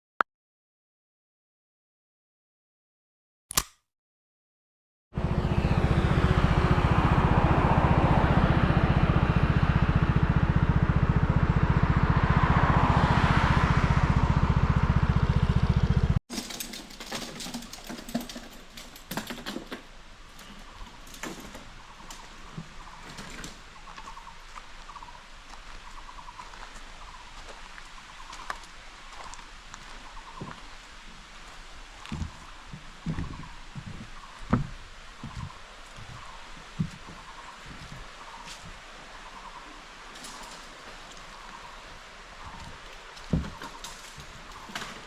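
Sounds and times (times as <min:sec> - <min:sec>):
scooter engine running: 0:05.2 - 0:16.5.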